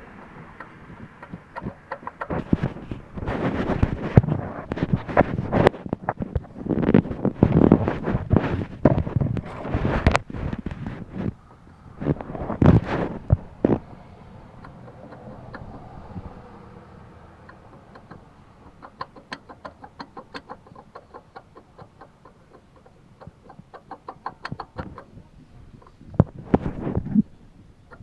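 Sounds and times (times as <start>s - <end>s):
car engine humming: 11.3s - 20.4s.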